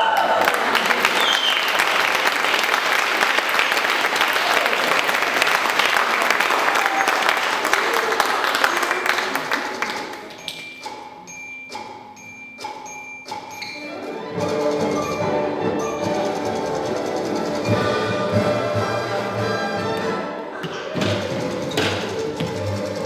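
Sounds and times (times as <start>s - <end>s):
audience applauding: 0.0s - 10.8s.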